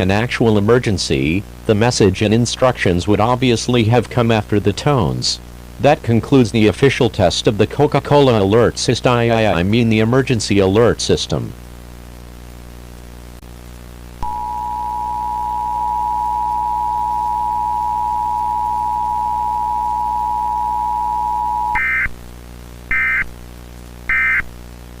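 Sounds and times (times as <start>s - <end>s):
two-tone attention signal: 14.2s - 22.1s.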